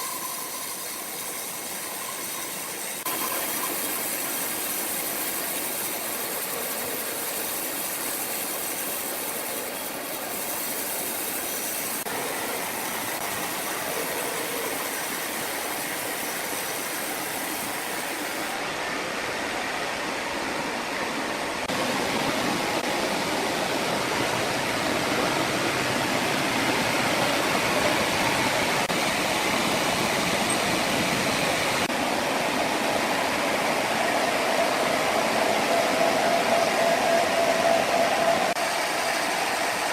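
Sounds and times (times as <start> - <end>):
sawmill saw cutting log: 0.0 - 18.6.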